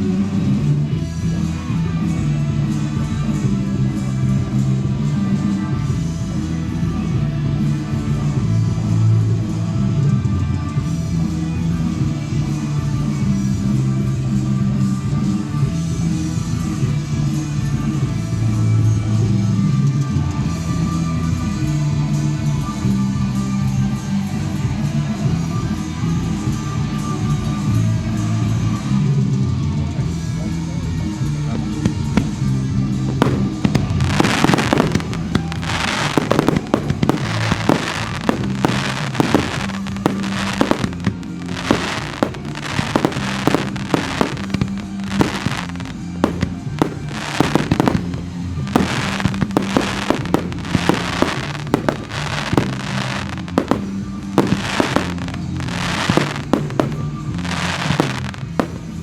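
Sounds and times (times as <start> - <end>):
music soundtrack: 30.0 - 59.0
fireworks bangs: 31.4 - 59.0.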